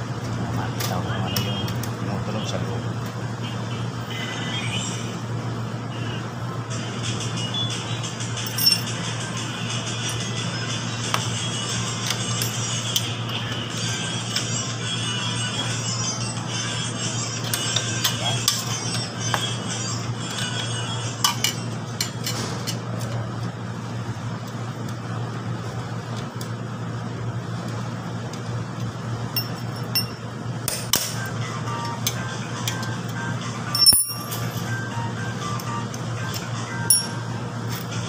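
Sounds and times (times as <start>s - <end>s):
metal tools clinking on wheel parts: 8.4s - 9.0s, 29.3s - 30.3s, 33.7s - 34.8s, 36.8s - 37.8s.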